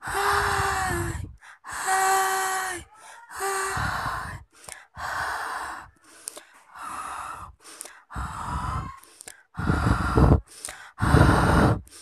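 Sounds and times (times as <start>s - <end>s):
breathy gasps: 2.7s - 12.0s.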